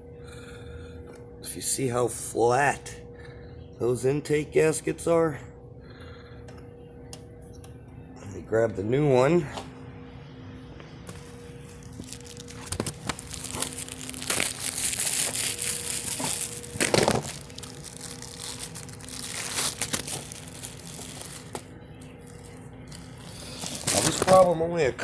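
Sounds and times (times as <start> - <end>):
faint steady hum: 0.0 - 25.0
plastic packaging crinkling and tearing: 11.1 - 24.6.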